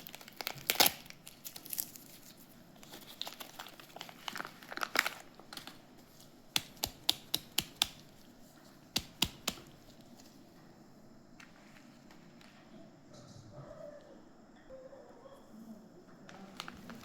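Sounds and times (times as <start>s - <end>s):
packaging crinkling: 0.0s - 10.6s, 16.3s - 17.0s.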